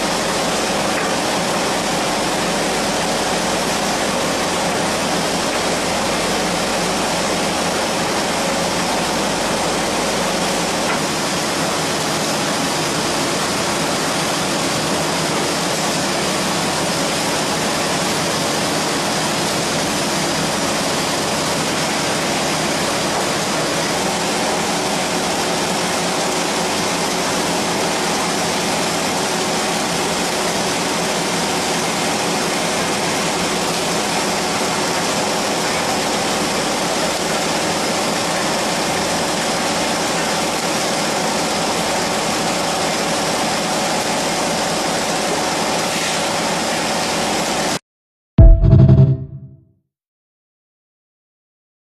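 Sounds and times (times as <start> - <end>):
machine running: 0.0 - 38.6, 48.4 - 49.6.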